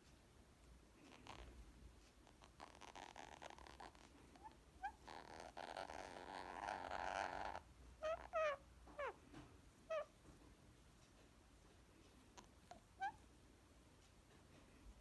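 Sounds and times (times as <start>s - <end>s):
parakeet purring: 1.1s - 1.6s, 2.2s - 9.2s, 9.9s - 10.1s, 12.3s - 13.2s
parakeet chirps: 4.8s - 9.2s.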